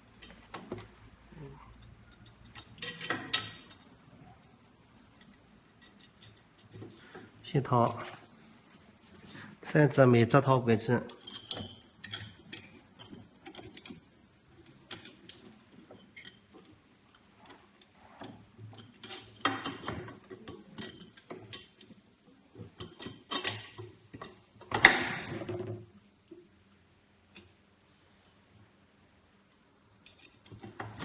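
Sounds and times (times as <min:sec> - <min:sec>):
metallic clicking of screws: 0:22.8 - 0:24.9, 0:29.5 - 0:31.0.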